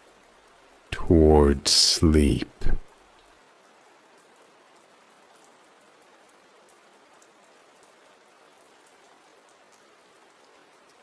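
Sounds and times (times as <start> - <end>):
rain hissing: 0.9 - 2.9
raindrop ticks: 8.8 - 11.0.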